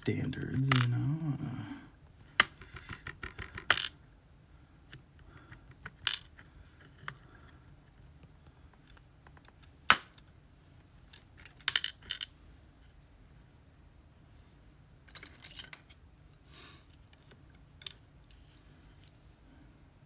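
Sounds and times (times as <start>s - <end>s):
small steel parts tapping: 0.6s - 1.0s.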